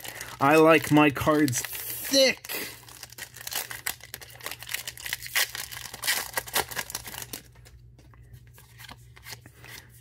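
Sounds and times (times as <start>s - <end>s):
foil wrapper tearing and crinkling: 0.0s - 7.6s
cards rustling: 0.0s - 10.0s.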